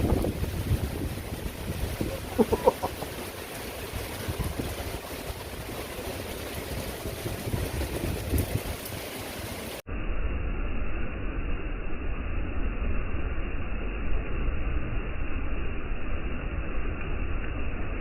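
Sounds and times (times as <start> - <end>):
wind gusting over microphone: 0.0 - 9.8
rain hiss: 0.0 - 18.0.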